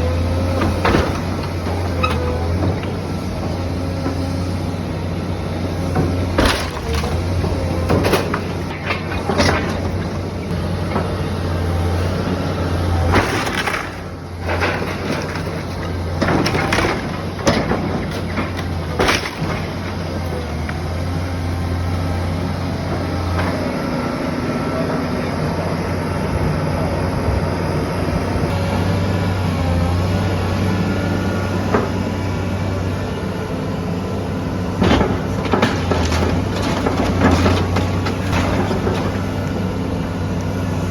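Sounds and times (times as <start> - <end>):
wood cracking and breaking: 6.3 - 10.2, 13.1 - 20.0, 34.8 - 39.5.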